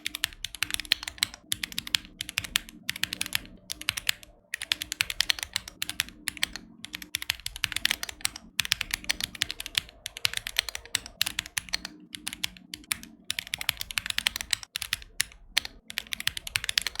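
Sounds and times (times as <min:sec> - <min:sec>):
rapid mechanical keyboard typing: 0:00.0 - 0:17.0.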